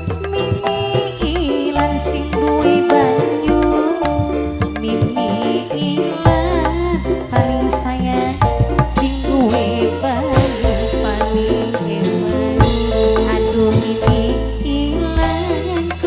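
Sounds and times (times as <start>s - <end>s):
steady bass line: 0.0s - 5.4s, 6.3s - 16.0s
hand drum pattern: 0.0s - 16.0s.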